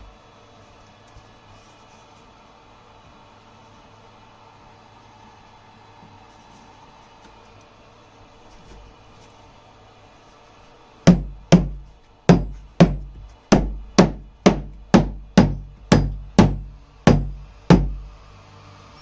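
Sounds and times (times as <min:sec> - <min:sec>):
hammer blows on wood: 0:11.1 - 0:18.1.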